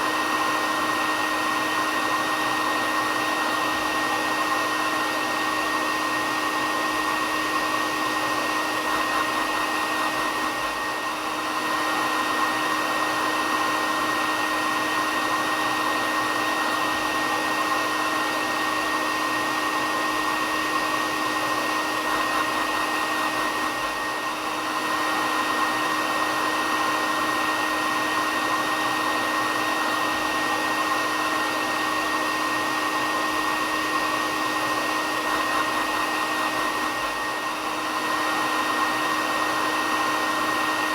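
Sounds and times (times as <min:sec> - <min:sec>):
hair dryer running: 0:00.0 - 0:40.9.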